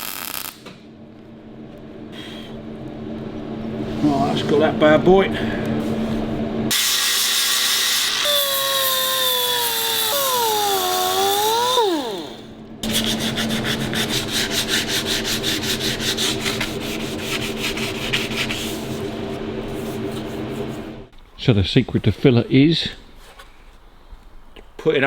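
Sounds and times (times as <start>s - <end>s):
power tool whining on metal: 6.7s - 13.0s
hand rubbing strokes: 12.8s - 21.0s.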